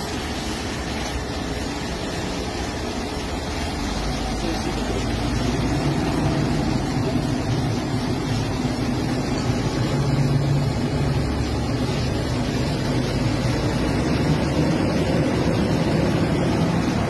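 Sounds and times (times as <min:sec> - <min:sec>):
road and wind noise: 0:04.7 - 0:17.0.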